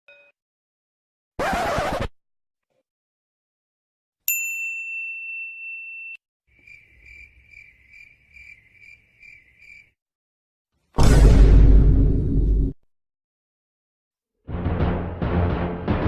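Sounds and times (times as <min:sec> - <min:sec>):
bright ding: 0:00.1 - 0:00.4, 0:04.3 - 0:06.2
crickets chirping: 0:06.5 - 0:10.0.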